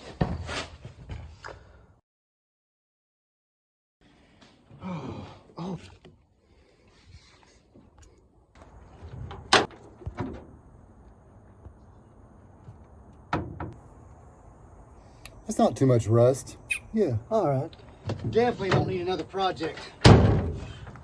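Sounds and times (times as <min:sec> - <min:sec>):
sharp clunks and knocks: 0:13.2 - 0:13.8, 0:18.0 - 0:21.0
short pitched squeaks: 0:16.7 - 0:17.0.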